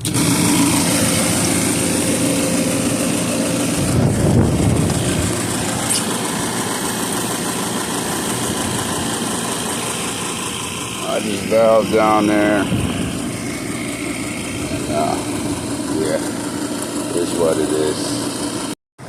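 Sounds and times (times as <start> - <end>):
low rumble: 1.1 - 6.0, 10.1 - 16.9.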